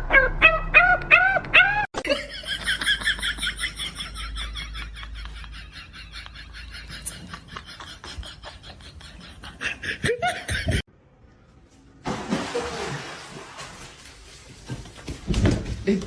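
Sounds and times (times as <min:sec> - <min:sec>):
person laughing in rhythmic pulses: 0:01.3 - 0:10.9.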